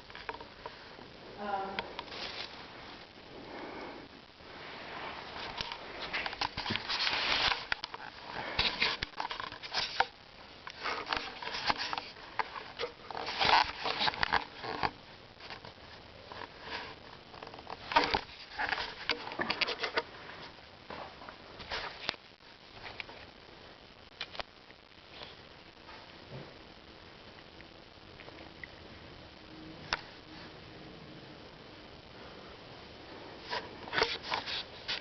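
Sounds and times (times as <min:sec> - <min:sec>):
cat rustling and scratching: 0:02.0 - 0:03.0, 0:04.6 - 0:22.2, 0:33.4 - 0:35.0.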